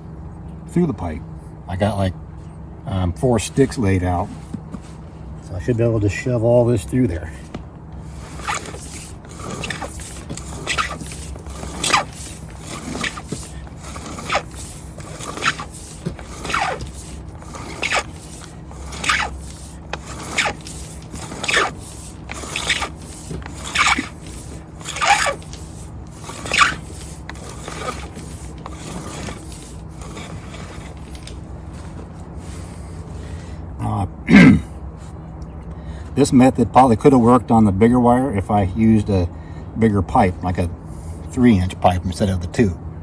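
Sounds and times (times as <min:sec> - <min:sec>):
wire scraping inside pipe: 0:03.4 - 0:05.7, 0:07.0 - 0:33.4.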